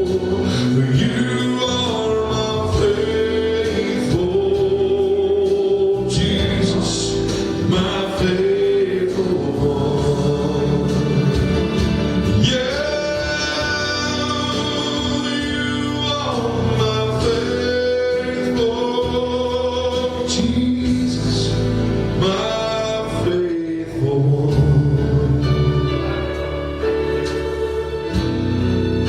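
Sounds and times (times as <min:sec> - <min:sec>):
instrumental accompaniment: 0:00.0 - 0:29.0
person singing with vibrato: 0:00.0 - 0:29.0.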